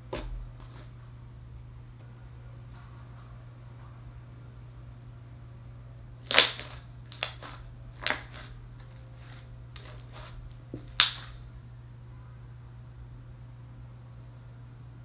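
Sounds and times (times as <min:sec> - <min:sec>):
slime popping and clicking: 0:06.3 - 0:08.5, 0:09.8 - 0:11.4.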